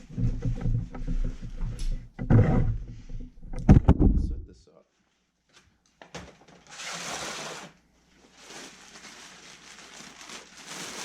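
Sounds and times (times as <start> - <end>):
rustling and scraping handling: 0.0 - 3.7.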